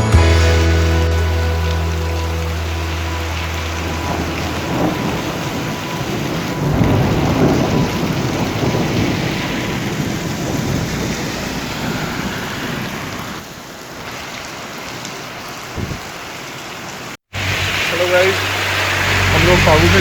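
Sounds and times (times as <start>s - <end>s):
low rumble: 0.0s - 13.3s
heavy rain pouring: 0.0s - 20.0s.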